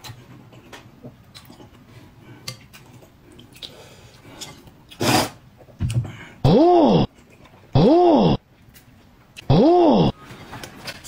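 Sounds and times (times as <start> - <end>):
person chewing: 0.5 - 5.3.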